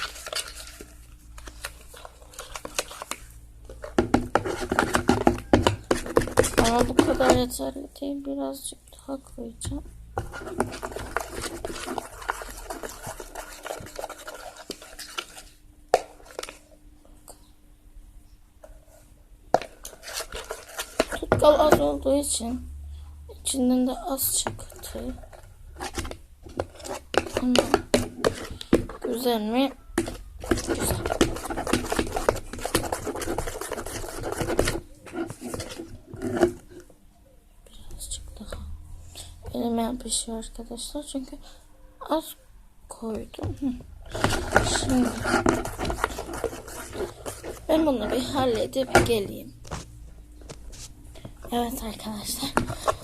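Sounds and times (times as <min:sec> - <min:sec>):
slime squelching by hand: 0:09.7 - 0:16.7, 0:43.6 - 0:50.0.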